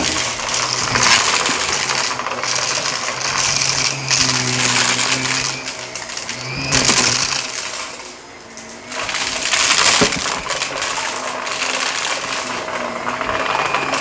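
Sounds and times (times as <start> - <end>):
debris crackling and rattling: 0.0 - 14.0
vacuum cleaner running over carpet: 0.0 - 14.0.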